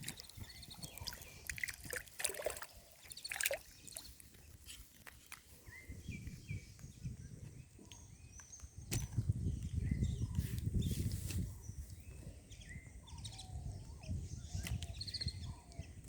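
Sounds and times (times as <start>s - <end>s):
water sloshing and trickling: 0.0s - 5.4s
sharp splashes: 1.0s - 4.1s.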